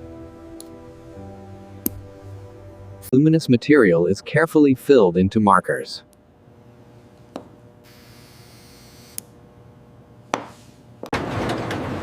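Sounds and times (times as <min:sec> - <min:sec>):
low steady hum: 0:00.0 - 0:11.1
noisy ambience: 0:00.0 - 0:12.0.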